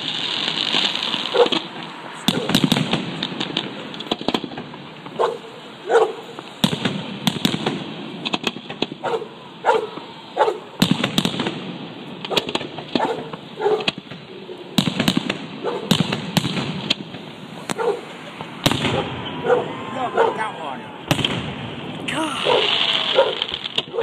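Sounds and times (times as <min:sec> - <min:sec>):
fireworks exploding: 0:00.0 - 0:24.0
dog barking: 0:01.3 - 0:01.6, 0:05.2 - 0:06.2, 0:09.0 - 0:10.6, 0:12.3 - 0:13.9, 0:15.6 - 0:15.9, 0:17.8 - 0:18.1, 0:19.0 - 0:20.4, 0:22.4 - 0:24.0.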